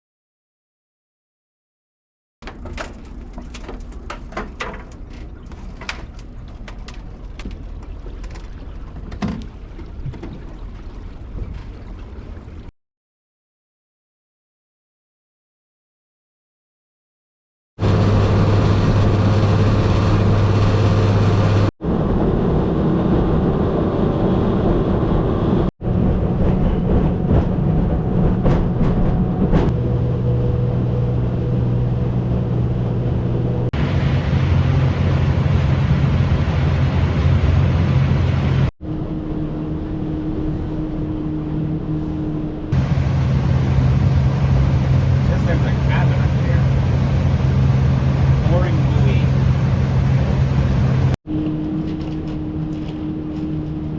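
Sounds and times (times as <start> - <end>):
boat motor running: 17.8 - 21.7, 25.3 - 38.7, 42.7 - 51.8.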